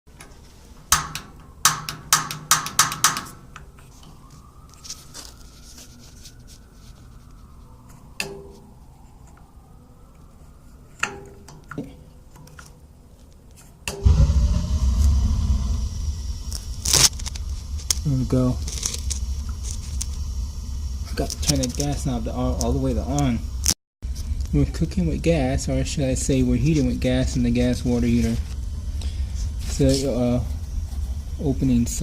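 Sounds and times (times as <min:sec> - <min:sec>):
loud low rumbling: 0:14.0 - 0:32.0.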